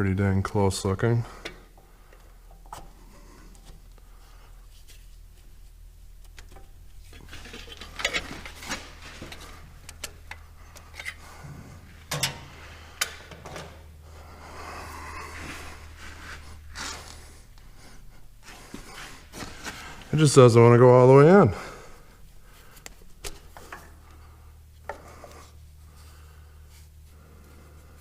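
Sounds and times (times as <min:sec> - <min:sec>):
steady low hum: 0:00.0 - 0:28.0
rubbing and scraping: 0:15.2 - 0:20.1.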